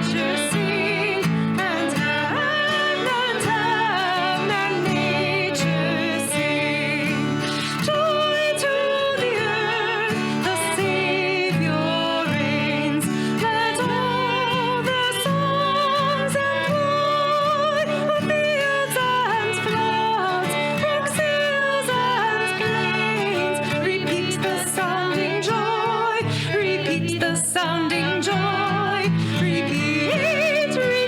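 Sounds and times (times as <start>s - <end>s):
people singing worship song: 0.0s - 15.0s, 23.9s - 31.0s.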